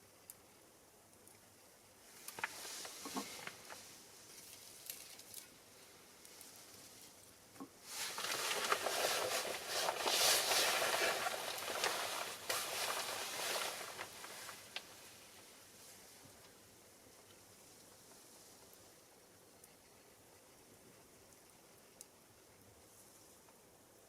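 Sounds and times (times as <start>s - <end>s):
fire crackling and popping: 2.2s - 5.5s, 7.8s - 15.4s.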